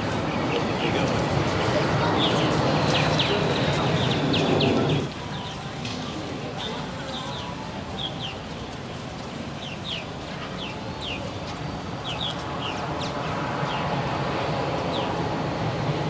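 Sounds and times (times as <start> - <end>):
steady background din: 0.0 - 5.1
small birds chirping: 2.0 - 5.1.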